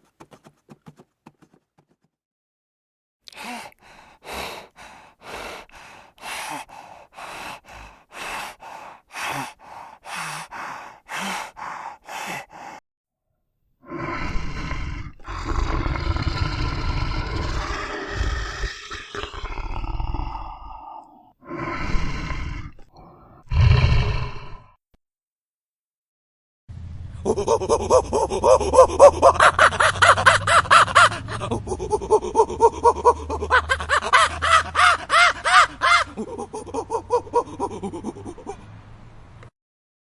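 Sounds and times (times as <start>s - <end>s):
hooves clip-clopping: 0.0s - 2.1s
big cat roaring and growling: 13.9s - 24.7s.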